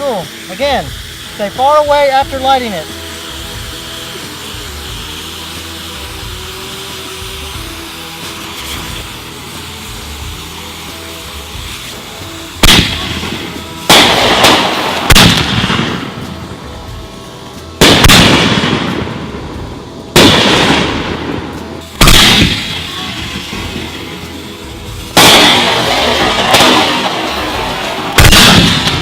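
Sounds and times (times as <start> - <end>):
firework bangs with crackling: 0.0 - 17.2, 17.8 - 29.0.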